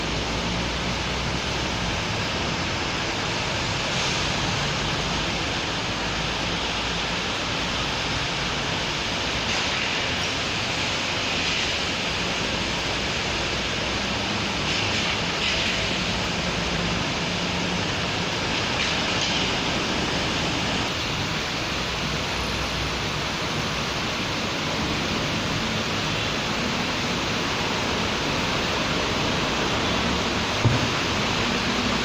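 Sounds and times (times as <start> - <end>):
steady rain hissing: 0.0 - 32.0
short thump: 30.6 - 31.0.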